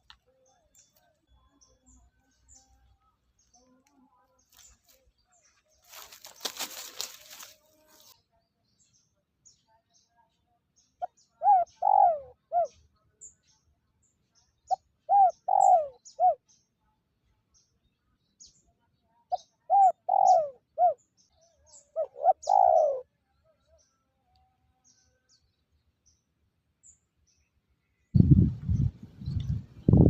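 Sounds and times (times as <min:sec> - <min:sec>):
small birds chirping: 0:00.0 - 0:30.0
dove cooing: 0:11.4 - 0:12.7, 0:15.1 - 0:16.4, 0:19.7 - 0:21.0, 0:22.0 - 0:23.0.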